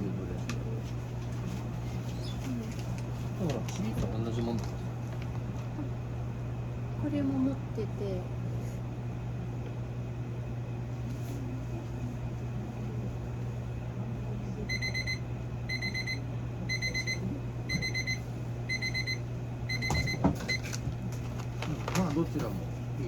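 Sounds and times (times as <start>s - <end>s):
rapid alarm beeps: 14.7s - 20.7s.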